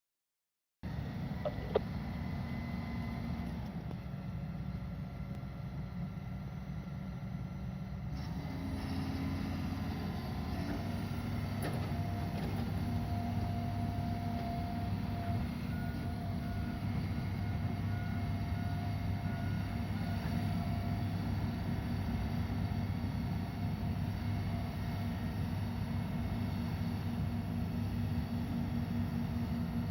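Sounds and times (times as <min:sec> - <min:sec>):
thin hydraulic whine: 0:00.9 - 0:06.2
diesel engine running under load: 0:00.9 - 0:29.9.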